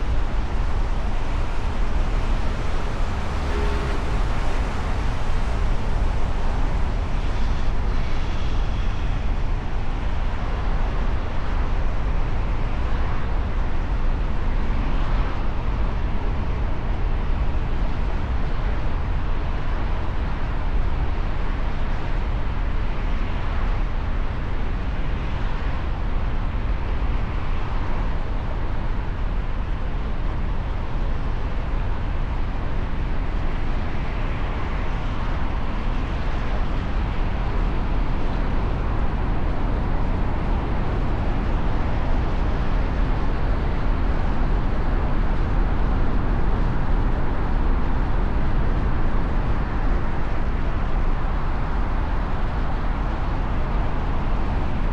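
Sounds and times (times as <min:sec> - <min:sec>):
road traffic rumble: 0:00.0 - 0:09.7, 0:32.8 - 0:54.9.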